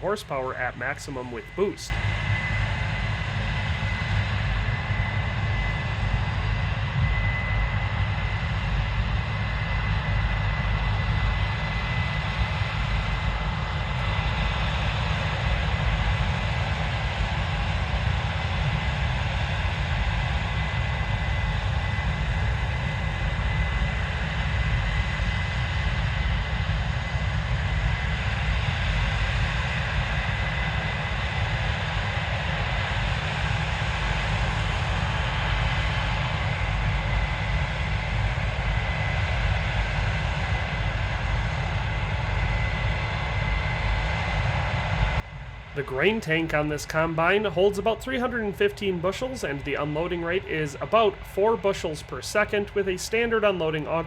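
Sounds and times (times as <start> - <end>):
high whine: 0.0 - 6.4, 45.2 - 54.0.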